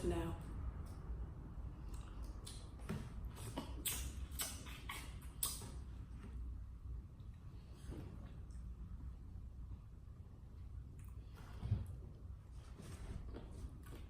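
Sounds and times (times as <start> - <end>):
chewing with lip smacks: 3.4 - 5.8.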